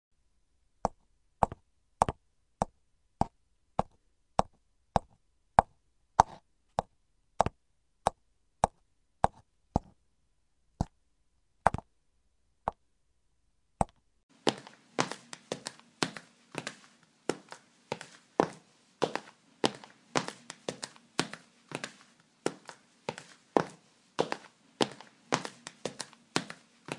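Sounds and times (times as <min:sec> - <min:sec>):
high-heel footsteps on hard floor: 0:14.3 - 0:26.9.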